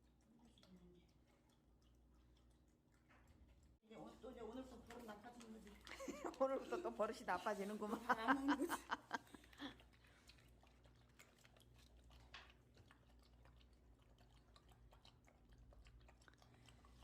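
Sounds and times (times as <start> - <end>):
dog chewing a treat: 0.0 - 3.8, 9.2 - 17.0.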